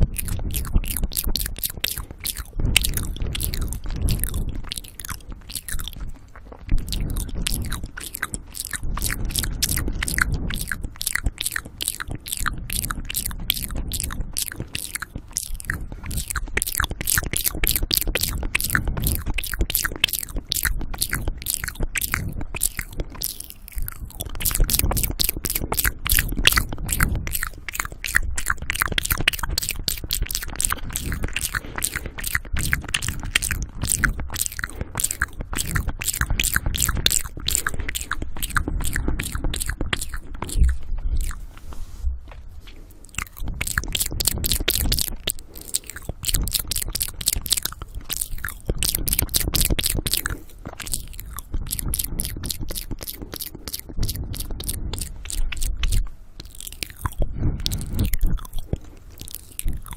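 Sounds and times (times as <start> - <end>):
lip and tongue clicks: 0.0 - 59.9
heavy breathing on microphone: 30.8 - 35.1, 57.1 - 59.7.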